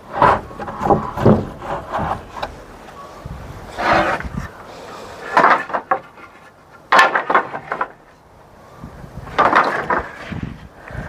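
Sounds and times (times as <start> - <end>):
wooden boards knocking and scraping: 0.0 - 3.0, 3.7 - 4.6, 5.2 - 8.2, 9.2 - 11.0.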